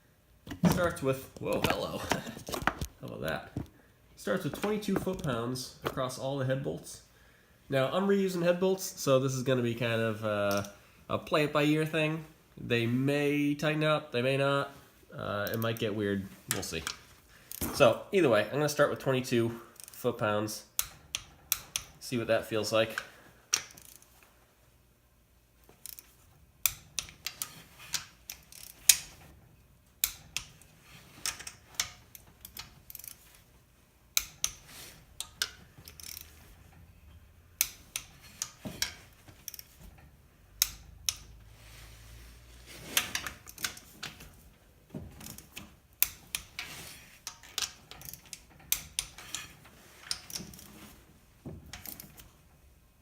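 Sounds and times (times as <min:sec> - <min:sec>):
ratchet wrench clicking: 0:23.5 - 0:24.0, 0:25.8 - 0:29.1, 0:30.0 - 0:33.2, 0:34.2 - 0:36.4, 0:37.6 - 0:39.8, 0:40.6 - 0:41.4, 0:45.2 - 0:50.7.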